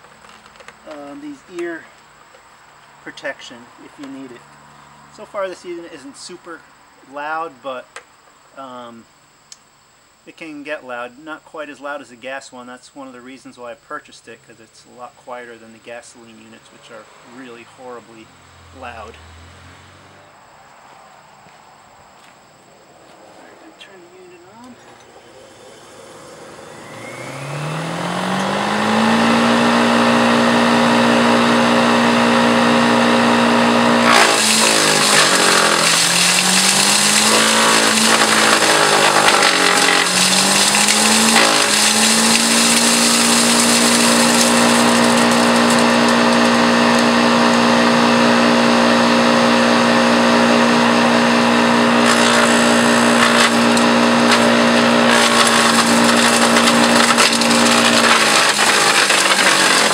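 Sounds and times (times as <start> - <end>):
wood chipper chipping branches: 0.0 - 2.1, 24.6 - 59.9
electric motor humming: 24.6 - 59.9.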